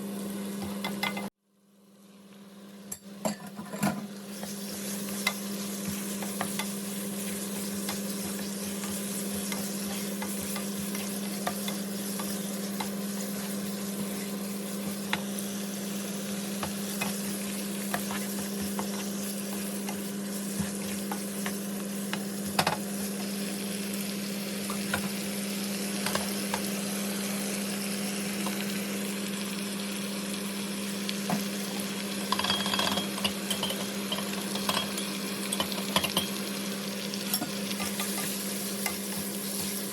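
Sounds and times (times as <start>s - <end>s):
food sizzling in a pan: 0.0s - 3.2s, 4.0s - 39.9s.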